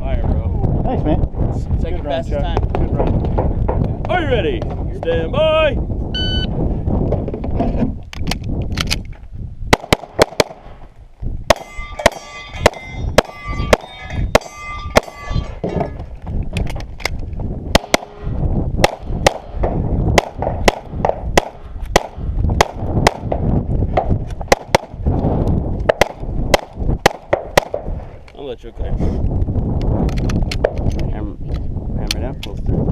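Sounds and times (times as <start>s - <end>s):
rapid pistol shots: 9.7s - 10.6s, 17.7s - 18.2s, 18.8s - 23.4s, 24.0s - 25.0s, 25.9s - 27.9s
steel targets clanging: 11.6s - 16.1s.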